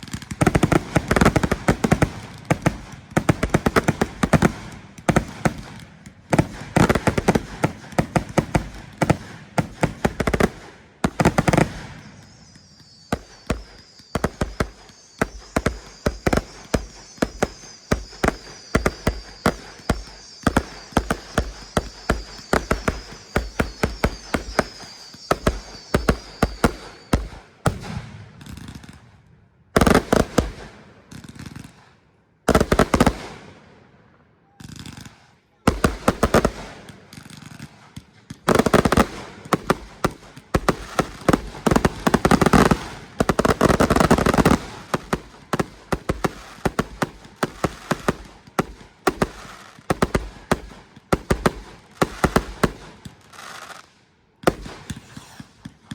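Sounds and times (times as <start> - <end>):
fireworks bangs and pops: 0.0 - 33.7, 34.6 - 55.9
high wavering whistle: 12.0 - 27.2.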